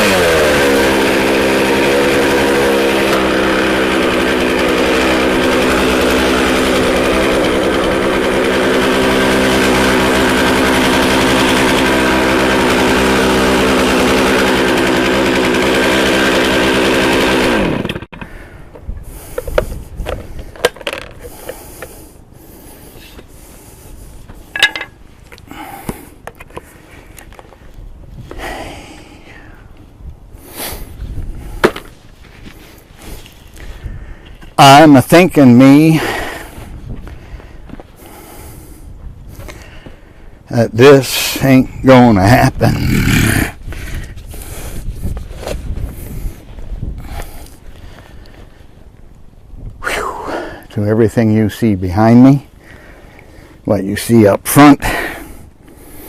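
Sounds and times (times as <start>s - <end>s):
chainsaw engine revving and idling: 0.0s - 18.1s, 34.6s - 36.5s, 40.5s - 43.6s.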